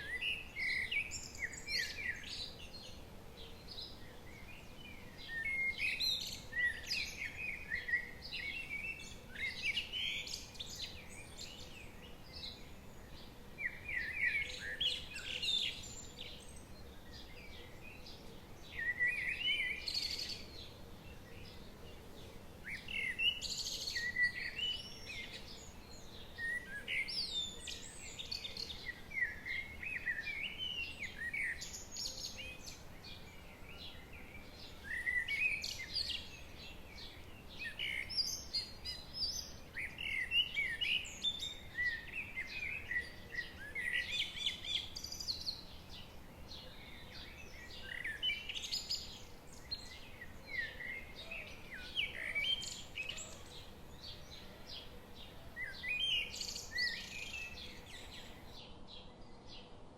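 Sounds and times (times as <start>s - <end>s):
faint steady hiss: 0.0s - 59.9s
songbirds singing: 0.0s - 59.9s.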